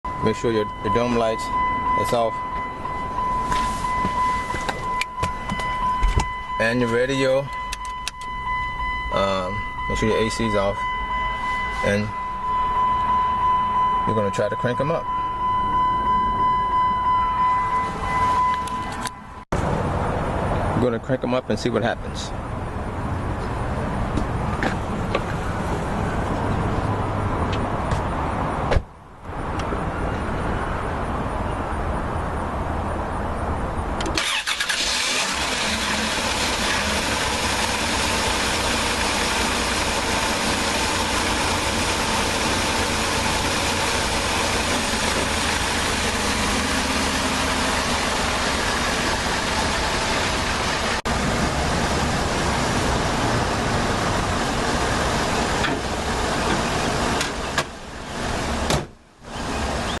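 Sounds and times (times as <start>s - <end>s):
car engine running: 34.2s - 58.7s.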